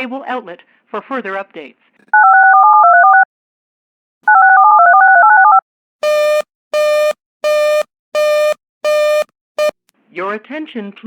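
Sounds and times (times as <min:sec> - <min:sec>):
touch-tone digits: 0:04.3 - 0:09.8.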